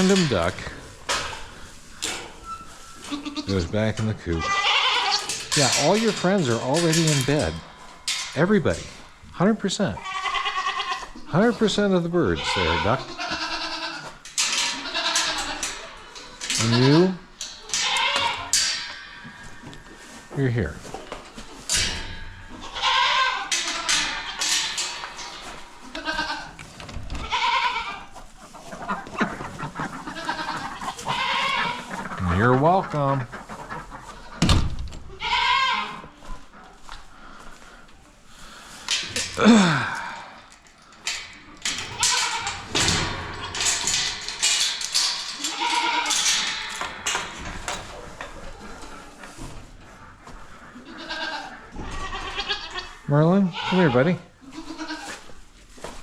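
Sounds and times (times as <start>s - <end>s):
rustling: 0.0s - 56.0s
goats bleating: 3.0s - 3.6s, 4.2s - 7.6s, 9.8s - 18.6s, 22.6s - 28.1s, 28.9s - 34.4s, 35.1s - 36.3s, 45.0s - 47.0s, 50.7s - 55.2s.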